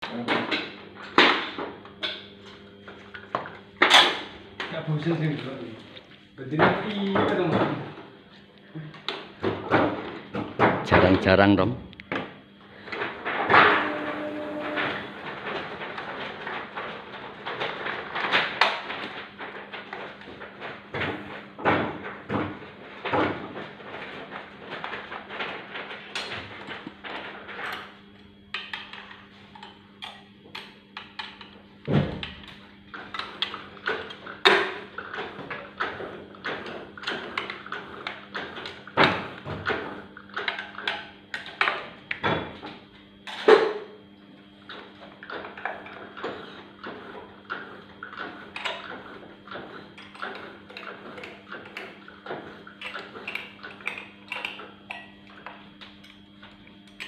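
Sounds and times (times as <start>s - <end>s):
printing press hum: 0.0s - 57.0s
printing press clacking and knocking: 9.4s - 11.5s, 12.9s - 27.7s, 31.9s - 41.0s, 44.8s - 53.8s.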